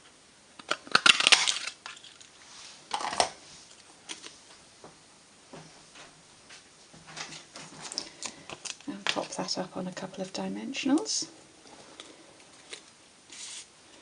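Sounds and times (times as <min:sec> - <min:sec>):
paper being handled: 0:13.3 - 0:13.7.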